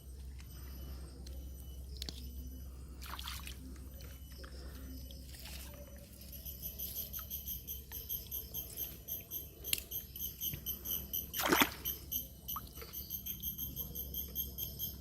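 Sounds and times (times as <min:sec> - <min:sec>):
water splash: 0:11.4 - 0:11.9.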